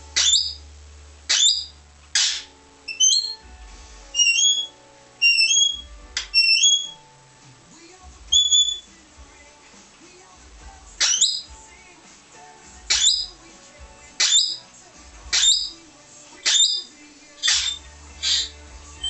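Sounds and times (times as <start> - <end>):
parrot whistled calls: 0.1 - 0.6, 1.3 - 3.4, 4.1 - 7.0, 8.3 - 8.9, 11.0 - 11.5, 12.9 - 13.3, 14.2 - 14.6, 15.3 - 15.8, 16.4 - 18.6
parrot upward-sweeping call: 0.2 - 0.6, 1.3 - 3.4, 4.1 - 7.0, 8.3 - 8.9, 11.0 - 11.5.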